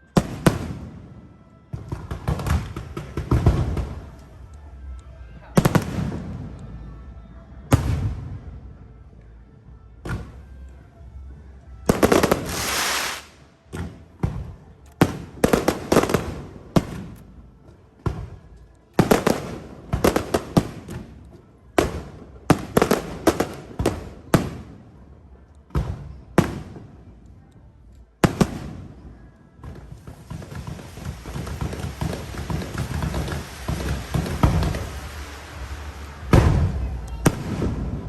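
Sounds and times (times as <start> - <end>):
fireworks bangs: 1.7 - 4.3, 5.6 - 6.6, 11.9 - 17.2, 19.0 - 24.8, 29.6 - 38.0
fireworks hissing and crackling: 1.8 - 4.4, 11.9 - 17.2, 19.0 - 24.8, 29.7 - 38.0.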